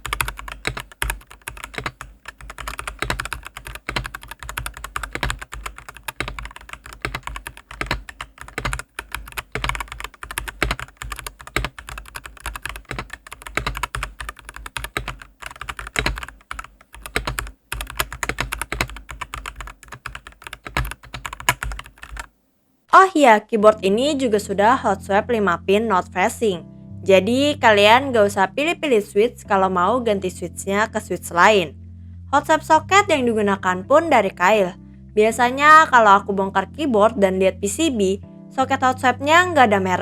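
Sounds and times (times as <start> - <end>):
mechanical keyboard typing: 0.0 - 22.3.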